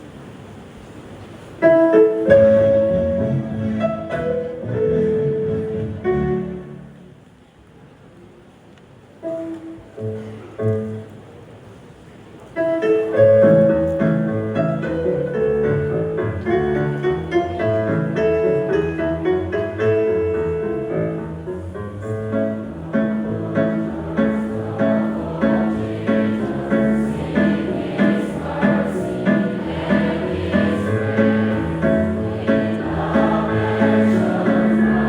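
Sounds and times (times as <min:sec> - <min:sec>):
keyboard playing a hymn tune: 0:01.6 - 0:07.2, 0:12.6 - 0:35.0.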